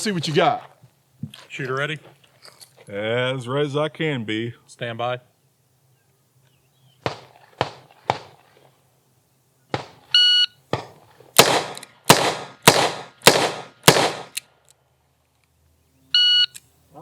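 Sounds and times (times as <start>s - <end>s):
quieter sharp gunshots: 7.0s - 8.4s, 9.7s - 10.1s, 10.7s - 14.4s.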